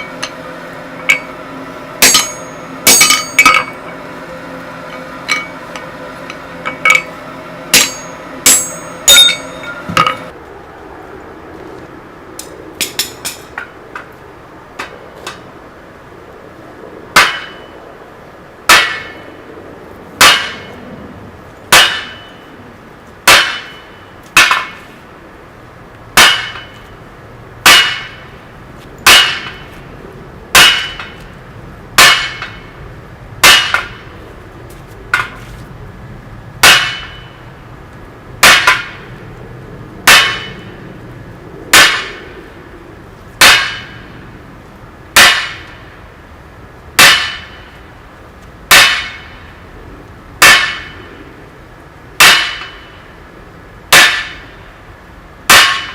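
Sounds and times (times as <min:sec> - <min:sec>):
hammer on metal anvil ringing: 0:02.0 - 0:04.0, 0:04.9 - 0:10.3, 0:27.7 - 0:28.2, 0:29.1 - 0:29.6, 0:36.6 - 0:37.4, 0:40.1 - 0:40.6, 0:43.4 - 0:44.0, 0:47.0 - 0:47.7.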